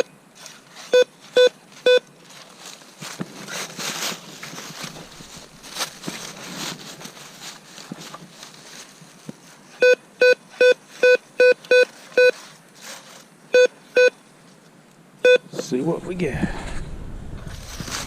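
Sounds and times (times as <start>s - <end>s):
soft rustling of detector coil: 0.0s - 14.8s
metal detector beeps: 0.9s - 2.1s, 9.8s - 12.4s, 13.5s - 14.2s, 15.2s - 15.4s.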